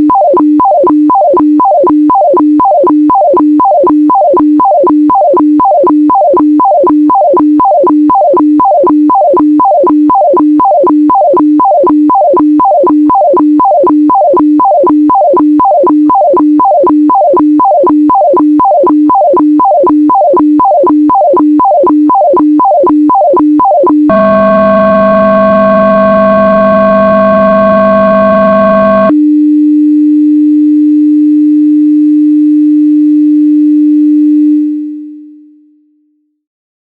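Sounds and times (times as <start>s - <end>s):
warbling radiofax tone: 0.0s - 24.4s
harsh buzzing multi-tone signal: 0.0s - 29.2s.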